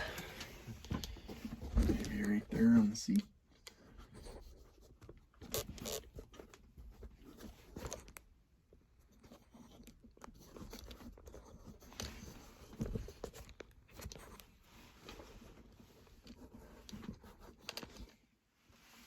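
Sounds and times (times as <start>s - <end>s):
faint handling clicks and rustling: 0.0s - 19.0s.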